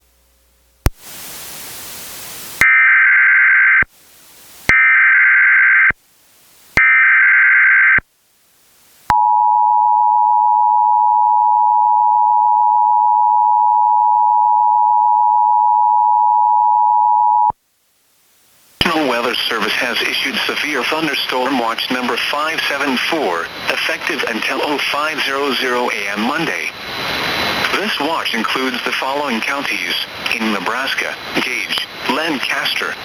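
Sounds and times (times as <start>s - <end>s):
static burst: 18.8s - 33.0s.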